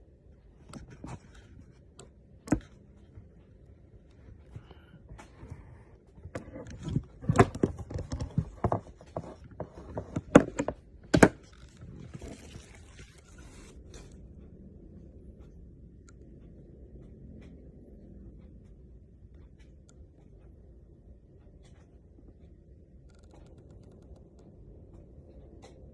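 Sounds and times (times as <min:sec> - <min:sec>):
faint steady hum: 0:00.0 - 0:25.9
plastic clicks knocks and scrapes: 0:00.6 - 0:03.2, 0:04.1 - 0:14.2.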